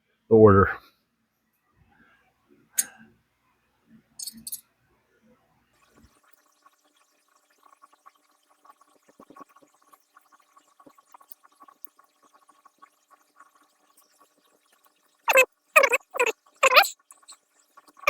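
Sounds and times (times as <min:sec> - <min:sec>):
metal hex keys clicking: 0:04.2 - 0:04.6.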